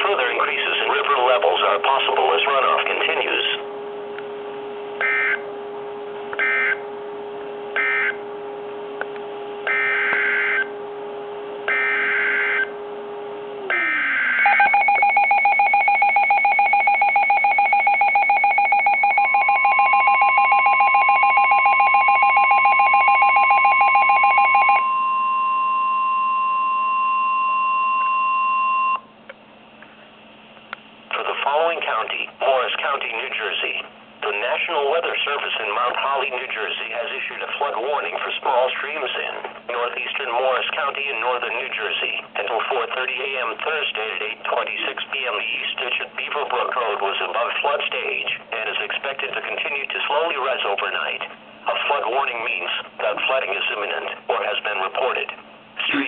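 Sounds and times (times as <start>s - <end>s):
steady alarm tone: 0.0s - 29.1s
pulsing two-pitch alert beep: 13.7s - 29.0s.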